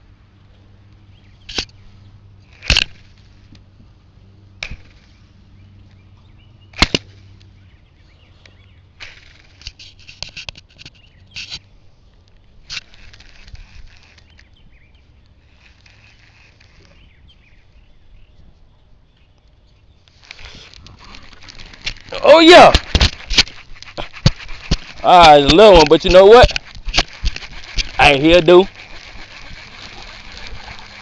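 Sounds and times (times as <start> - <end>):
clicks and rattles: 2.5 - 3.3, 12.3 - 14.6, 20.1 - 31.0.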